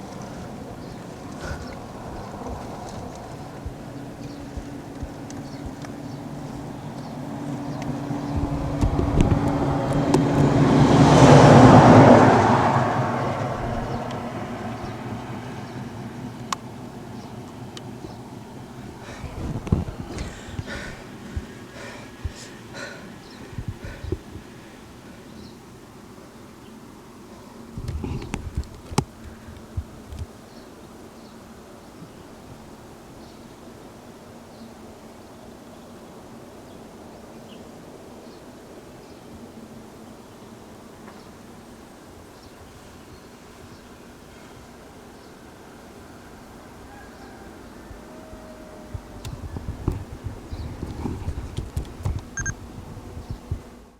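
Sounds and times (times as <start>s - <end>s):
motor vehicle passing by: 0.0s - 24.1s
low thumps and knocks: 8.3s - 10.5s, 19.2s - 20.7s, 23.5s - 24.4s.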